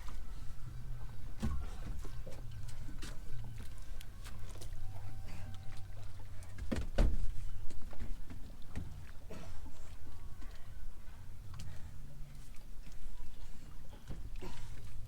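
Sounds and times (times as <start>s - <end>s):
knocks and clicks on a boat: 6.5s - 9.1s.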